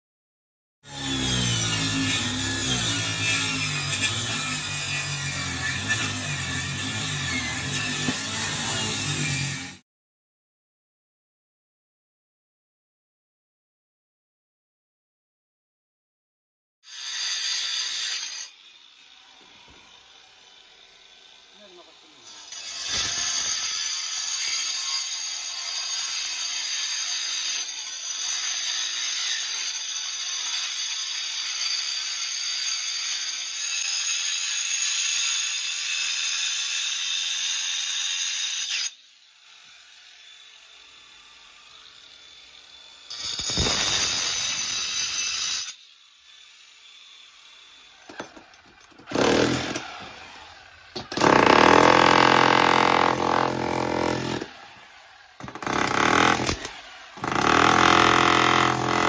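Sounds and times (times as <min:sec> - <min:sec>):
power cutter cutting: 0:00.9 - 0:09.8, 0:21.0 - 0:27.1, 0:41.3 - 0:45.8, 0:47.7 - 0:59.0.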